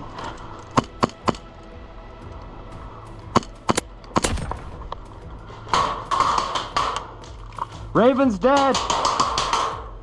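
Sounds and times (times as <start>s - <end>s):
airsoft gun shots: 8.5s - 10.0s.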